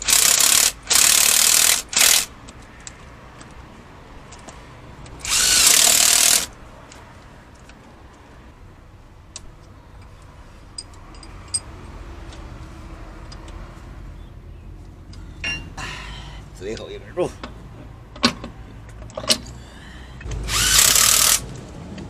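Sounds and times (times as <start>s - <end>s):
power tool burst: 0.0s - 2.3s, 5.2s - 6.5s, 20.4s - 21.4s.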